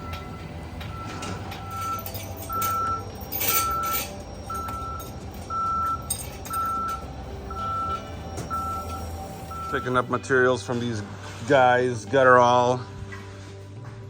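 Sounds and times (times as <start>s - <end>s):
backup alarm beeping: 0.0s - 10.8s
low engine hum: 0.0s - 13.1s.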